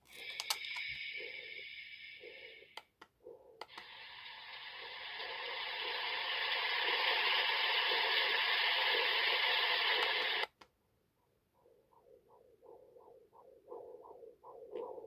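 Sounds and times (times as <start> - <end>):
white noise hiss from small speaker: 0.0 - 2.9, 3.6 - 10.6
soft heartbeat pulses: 2.2 - 3.8, 11.2 - 15.0.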